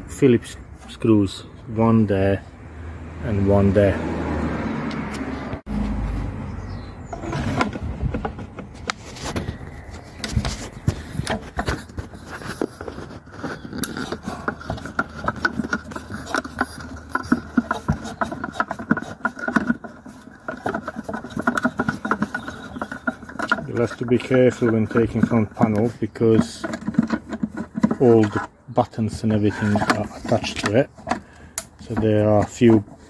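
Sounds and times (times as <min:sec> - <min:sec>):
plastic casing handled: 0:07.2 - 0:33.0.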